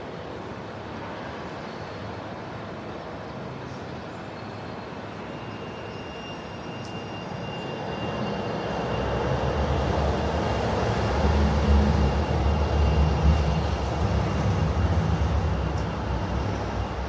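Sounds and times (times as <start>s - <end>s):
heavy vehicle rumbling past: 9.1s - 17.0s.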